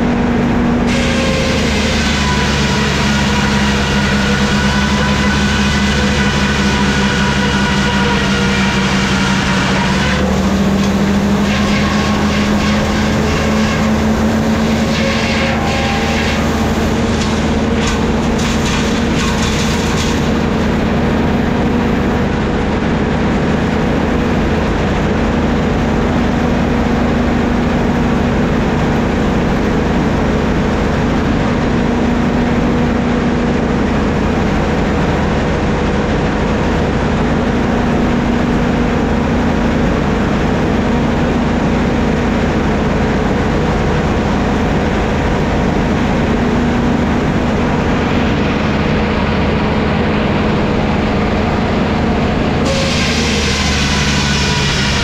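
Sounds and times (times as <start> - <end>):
sawmill machinery drone: 0.0 - 55.0
machinery clicking: 2.4 - 21.4.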